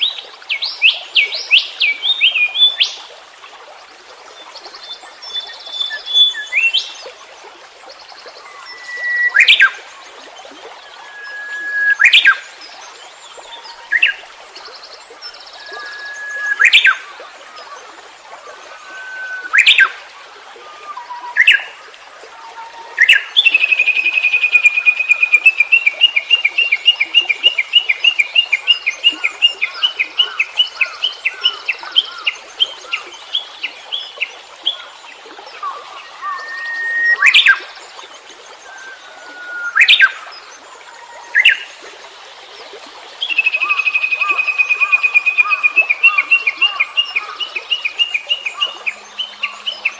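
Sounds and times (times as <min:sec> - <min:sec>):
wild birds singing: 0:43.2 - 0:49.9.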